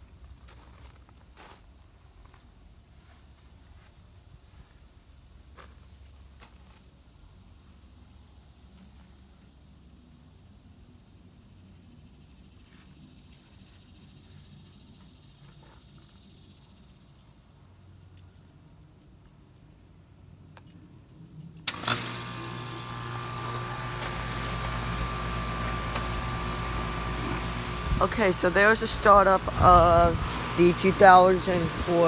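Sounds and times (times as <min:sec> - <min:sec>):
insects chirping: 0:09.3 - 0:21.6
air conditioner clunk: 0:21.7 - 0:32.0
air conditioner humming: 0:21.7 - 0:32.0.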